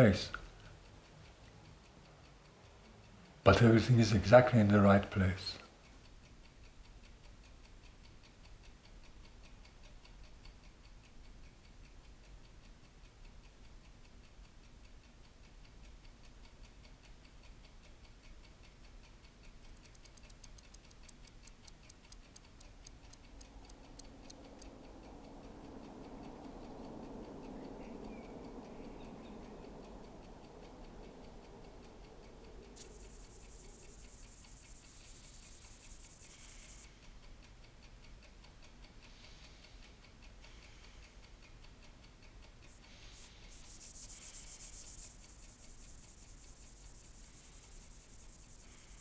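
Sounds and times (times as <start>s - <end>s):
mechanical watch ticking: 5.8s - 26.4s, 29.6s - 49.0s
low hum: 28.8s - 36.9s
sudden hiss: 32.6s - 36.9s, 42.6s - 49.0s.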